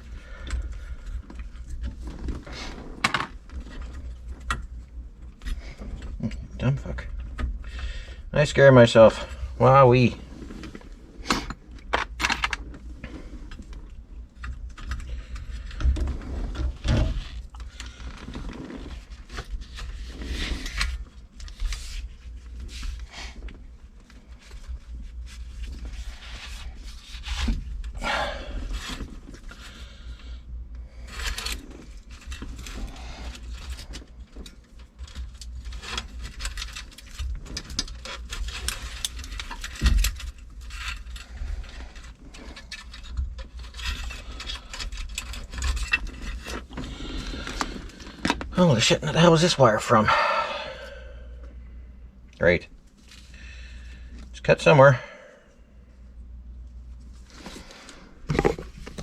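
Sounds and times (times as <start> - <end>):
hands and tools scraping and clicking: 10.4 - 30.4, 31.0 - 48.6.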